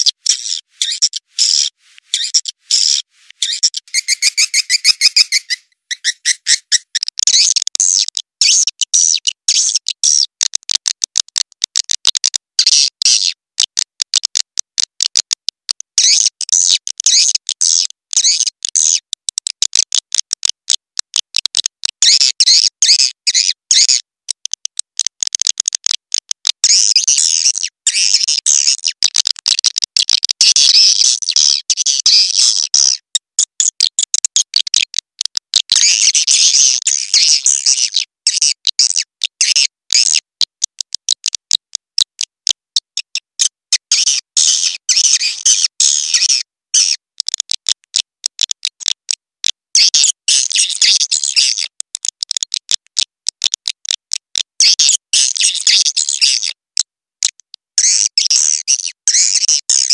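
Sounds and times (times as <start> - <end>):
high-pitched twittering bird chirps: 0.0 - 7.6, 37.1 - 38.5.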